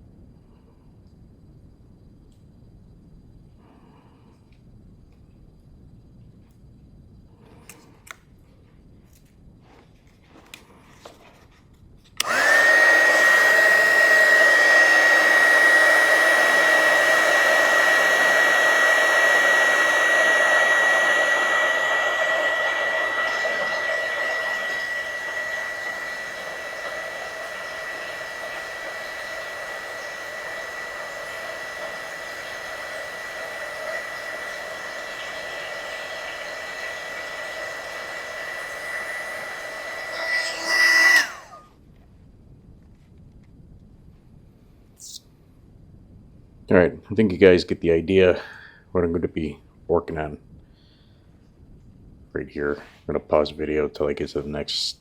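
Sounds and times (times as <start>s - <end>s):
electric blower motor whining: 12.2s - 41.6s.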